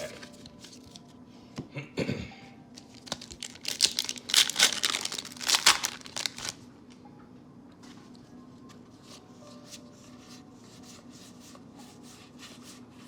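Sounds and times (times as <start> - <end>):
foil wrapper tearing and crinkling: 2.8 - 6.6.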